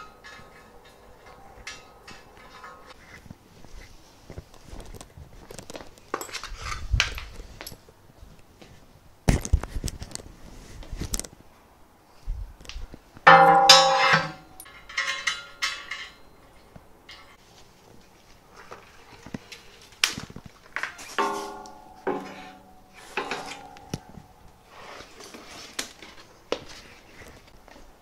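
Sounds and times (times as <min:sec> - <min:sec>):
hard parts knocking and clattering: 0:00.0 - 0:03.0, 0:13.2 - 0:17.4, 0:20.8 - 0:24.4
loud ringing clank: 0:13.3 - 0:16.5, 0:21.2 - 0:24.5.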